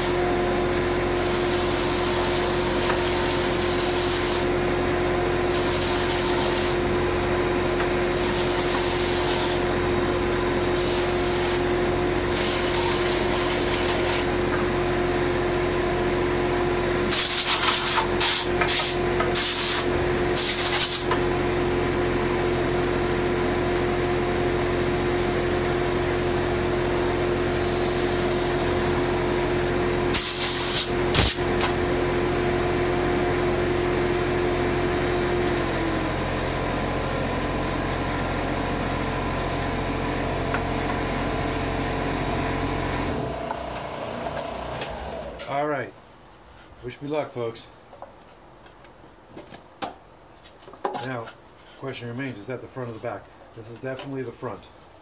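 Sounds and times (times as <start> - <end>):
wood rasping against sander: 10.6 - 11.7, 12.3 - 14.4
short loud hissing bursts: 17.1 - 21.1, 30.2 - 31.4
electric sander motor humming: 42.4 - 45.4.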